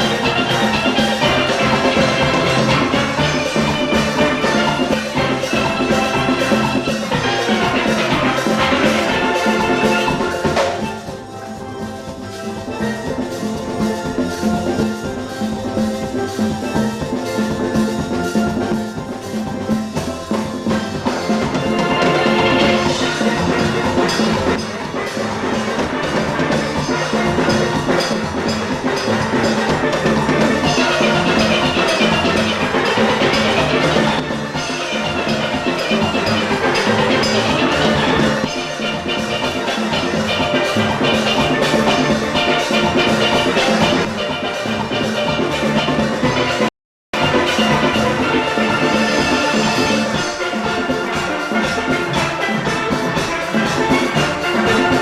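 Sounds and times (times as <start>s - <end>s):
drum kit and percussion: 0.0s - 55.0s
steel band playing calypso: 0.0s - 55.0s.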